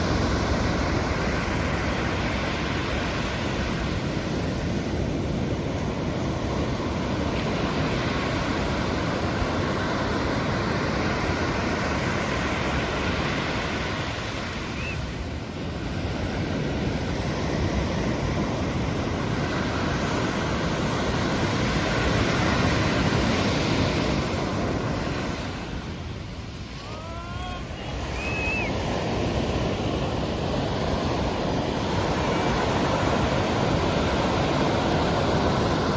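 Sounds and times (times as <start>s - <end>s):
waves breaking on beach: 0.0s - 35.9s
wind on microphone: 0.0s - 35.9s.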